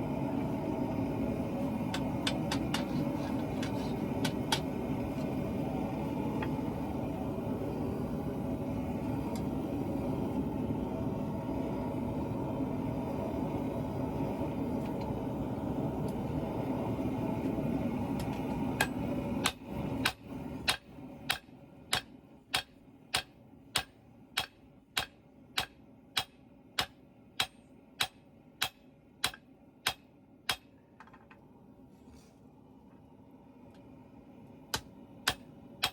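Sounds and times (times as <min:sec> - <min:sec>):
steady roaring rush: 0:00.0 - 0:21.2.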